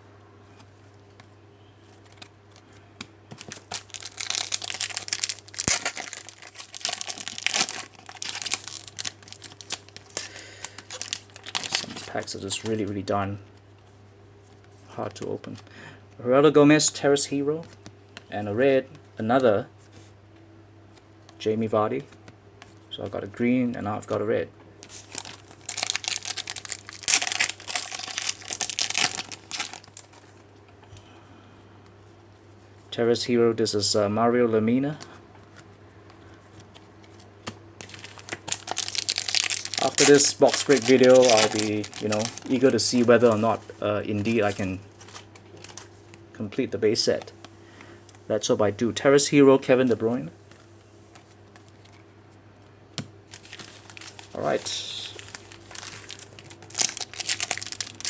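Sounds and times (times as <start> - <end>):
card pack wrapper crinkling and tearing: 3.3 - 12.9, 24.8 - 30.4, 37.8 - 43.6, 44.2 - 45.9, 53.3 - 58.0.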